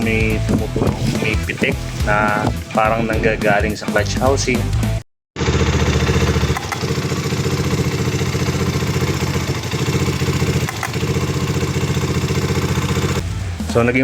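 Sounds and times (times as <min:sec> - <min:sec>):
motorcycle engine idling: 0:05.4 - 0:14.0.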